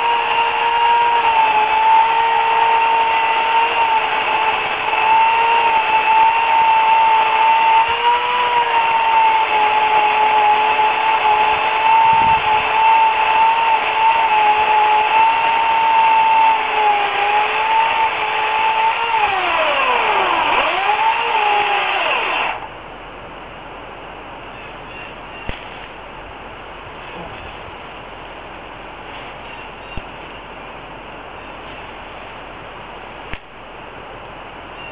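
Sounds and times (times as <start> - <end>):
electric chainsaw cutting wood: 0.0 - 22.7.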